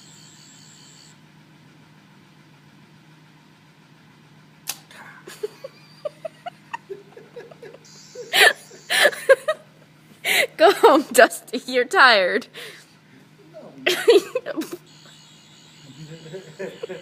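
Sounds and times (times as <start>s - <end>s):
toy high electronic whine: 0.0s - 1.2s, 7.8s - 9.5s, 14.9s - 17.0s
sharp clicks: 4.6s - 4.9s.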